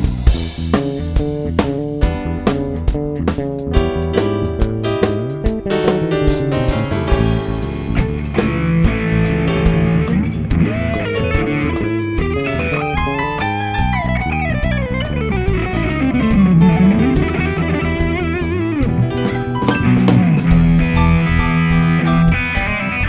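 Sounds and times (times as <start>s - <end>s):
bass: 0.0s - 23.0s
electric guitar lines: 0.0s - 23.0s
sharp percussion hits: 12.5s - 18.3s.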